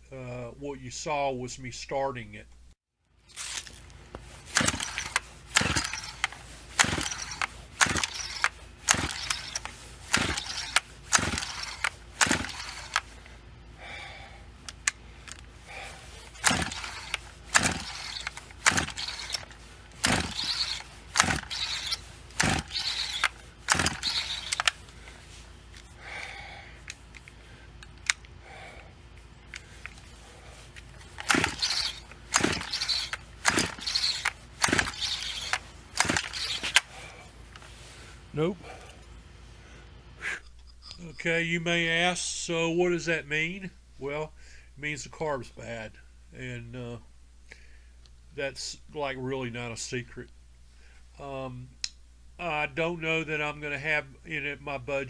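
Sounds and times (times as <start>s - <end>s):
chainsaw recoil starter pulled: 3.3s - 28.4s, 29.5s - 39.0s.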